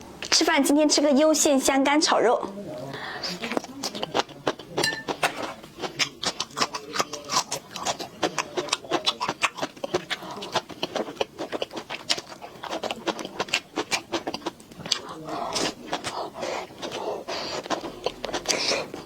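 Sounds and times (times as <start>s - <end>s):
person chewing: 3.2s - 19.0s.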